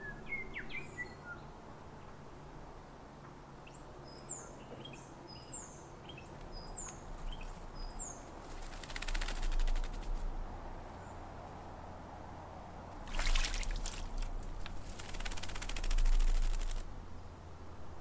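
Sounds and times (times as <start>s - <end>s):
bird fluttering wings in water: 8.4s - 10.3s, 12.9s - 16.9s.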